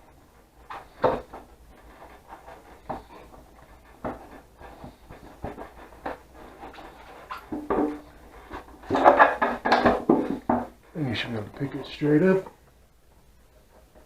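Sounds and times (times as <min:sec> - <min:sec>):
light knocks and rubbing: 0:00.6 - 0:10.7.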